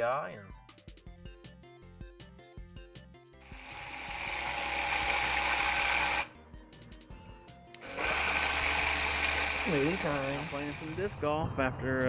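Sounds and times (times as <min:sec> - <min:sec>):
electric blender whirring: 0:03.4 - 0:06.4, 0:07.8 - 0:11.1.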